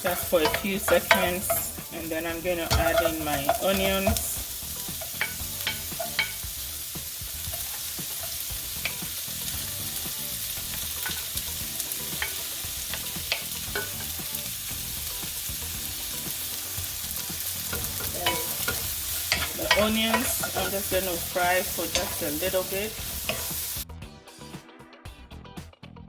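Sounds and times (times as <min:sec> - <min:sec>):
utensil clicking against pan: 0:00.0 - 0:01.8, 0:02.6 - 0:09.5, 0:10.6 - 0:14.4, 0:17.2 - 0:23.6
carrots sizzling in oil: 0:00.0 - 0:23.9.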